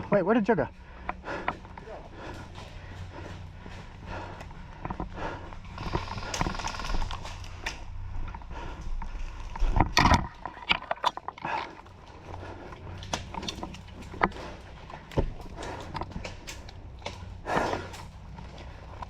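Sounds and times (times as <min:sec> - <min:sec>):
footsteps: 0:00.6 - 0:19.0
gear clicks and knocks: 0:00.8 - 0:19.0.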